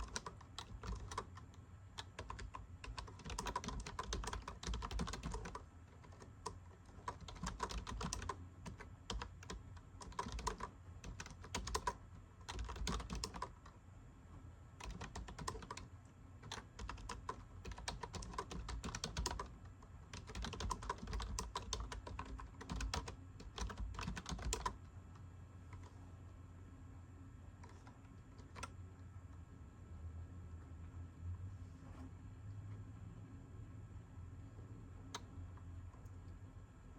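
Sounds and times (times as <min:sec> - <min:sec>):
computer keyboard typing: 0:00.0 - 0:13.7, 0:14.8 - 0:24.8, 0:27.6 - 0:28.8.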